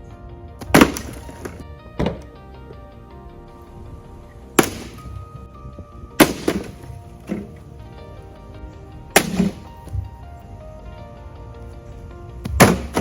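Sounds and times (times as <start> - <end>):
background music: 0.0 - 13.0
loud sharp hits: 0.6 - 1.5, 4.6 - 5.2, 9.2 - 9.7.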